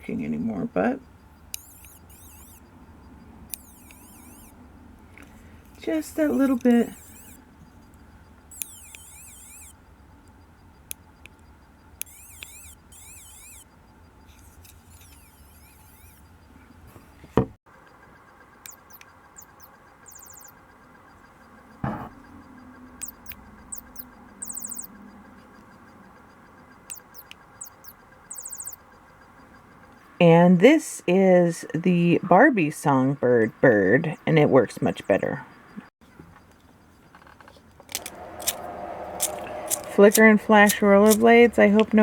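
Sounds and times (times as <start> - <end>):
electronic toy bird chirping: 0.2 - 16.8, 17.8 - 30.0
plastic toy knocks: 21.8 - 22.1.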